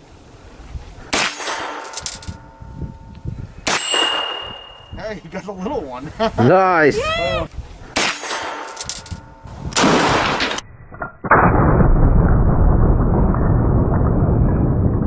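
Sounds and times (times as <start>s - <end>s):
gunshot: 1.1s - 1.9s, 3.6s - 4.8s, 9.7s - 10.6s, 11.3s - 14.8s
steel target plate ringing: 1.2s - 5.4s, 8.0s - 9.7s.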